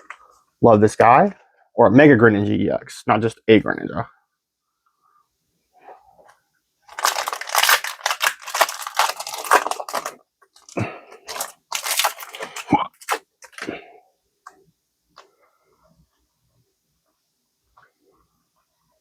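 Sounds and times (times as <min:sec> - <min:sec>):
foil wrapper tearing and crinkling: 0:06.9 - 0:13.7.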